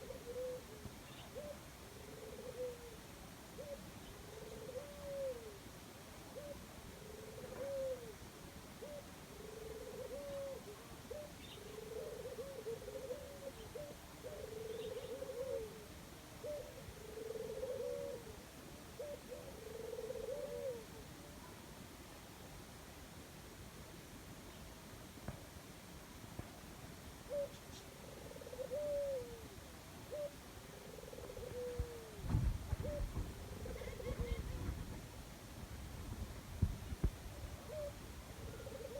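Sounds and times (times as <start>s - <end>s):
dove cooing: 0.0s - 5.7s, 6.3s - 21.2s, 27.2s - 35.1s, 37.3s - 38.9s.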